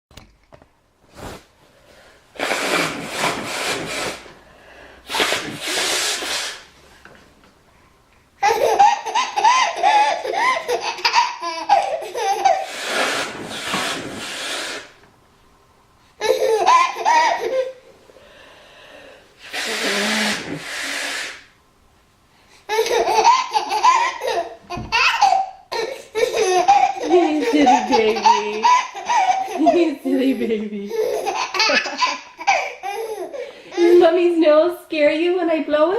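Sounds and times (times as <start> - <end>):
woman blowing her nose: 2.3 - 6.8, 12.2 - 15.0, 19.4 - 21.6, 25.8 - 30.0
baby laughing: 8.4 - 13.3, 16.2 - 17.8, 22.7 - 34.1.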